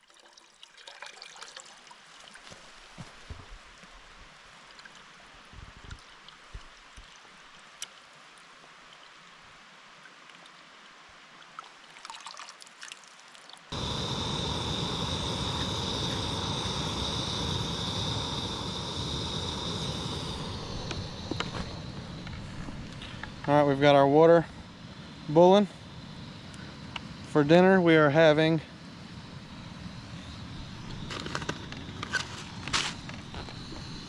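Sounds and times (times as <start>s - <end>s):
stream trickling: 0.0s - 3.0s, 3.8s - 14.8s
camp stove burner hissing: 13.7s - 34.0s.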